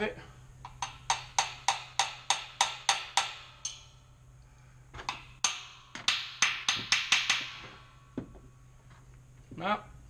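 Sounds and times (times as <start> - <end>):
metal ratchet tapping on valve: 0.6 - 4.0.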